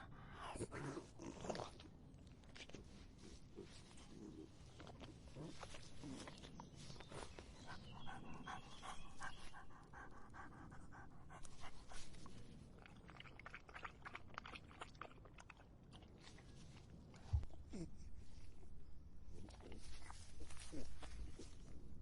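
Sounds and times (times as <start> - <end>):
dog lapping water: 11.8 - 16.2.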